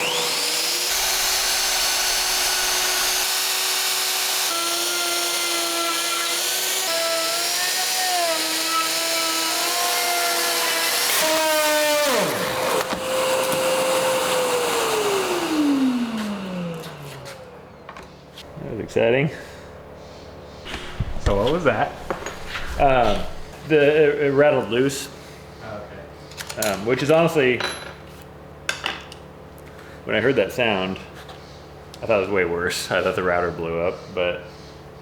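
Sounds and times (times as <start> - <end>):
wood router whining: 0.0 - 17.9, 20.7 - 23.6.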